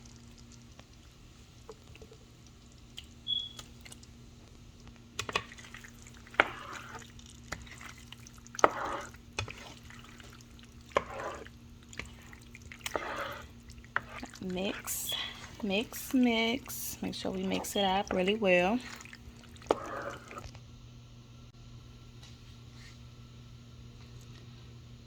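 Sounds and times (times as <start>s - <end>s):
wet sloshing and squelching: 5.2s - 20.6s.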